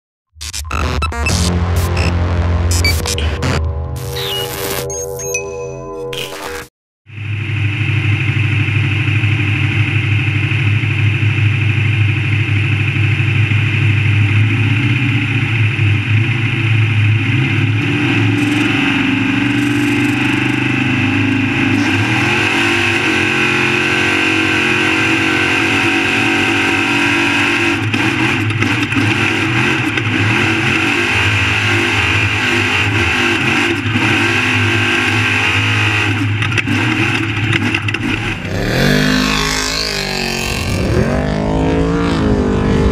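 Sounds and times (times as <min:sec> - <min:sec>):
truck engine revving: 0:13.3 - 0:42.9.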